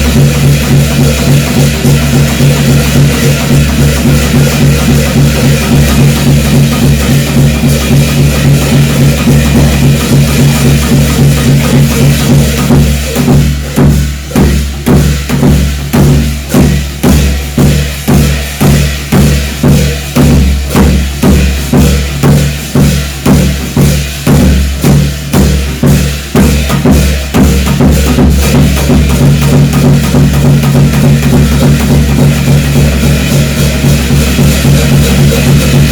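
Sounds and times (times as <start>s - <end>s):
steady drum beat: 0.0s - 35.9s.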